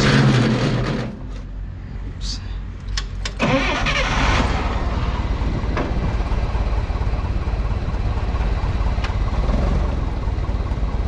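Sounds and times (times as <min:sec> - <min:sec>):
forklift engine running: 0:00.0 - 0:02.1, 0:02.7 - 0:11.0.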